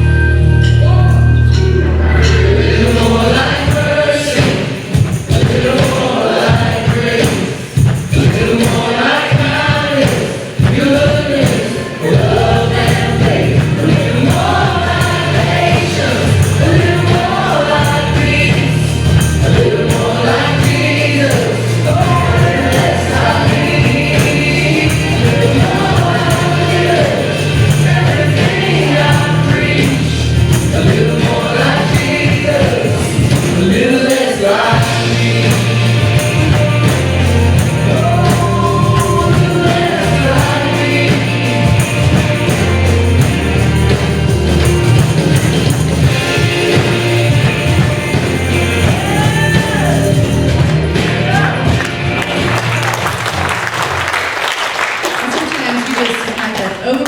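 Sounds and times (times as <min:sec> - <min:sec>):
voices singing together: 0:00.0 - 0:55.0
band playing worship music: 0:00.0 - 0:57.0
strong steady bass: 0:12.2 - 0:33.5.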